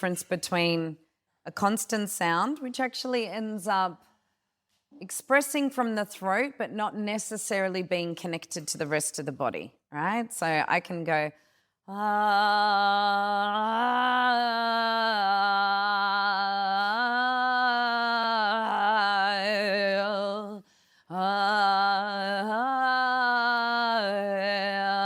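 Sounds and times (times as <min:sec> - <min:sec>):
woman holding a sustained vocal tone: 0:11.9 - 0:25.0.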